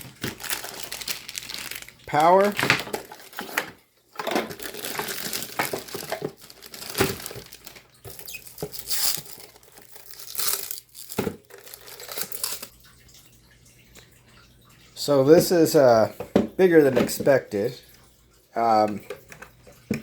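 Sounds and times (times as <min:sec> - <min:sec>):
plastic packaging crinkling: 0:00.0 - 0:12.7.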